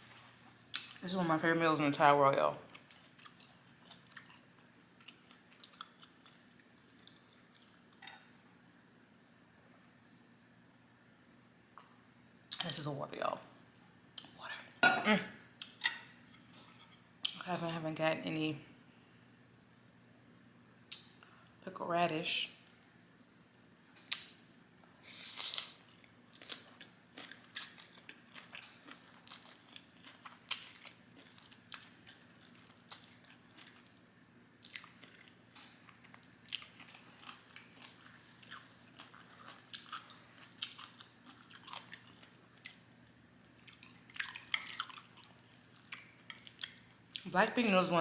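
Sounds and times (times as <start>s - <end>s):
chewing crunchy pickled radish: 2.7s - 8.2s, 25.3s - 34.0s, 34.6s - 47.3s.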